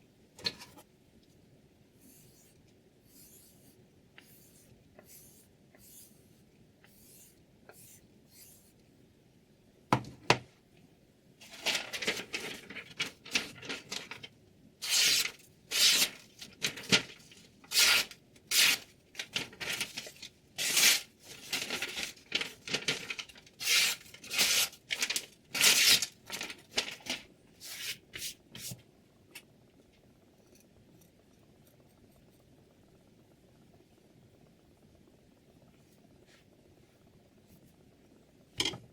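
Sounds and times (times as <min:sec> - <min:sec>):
knife blade scraping strokes: 0:02.0 - 0:06.3.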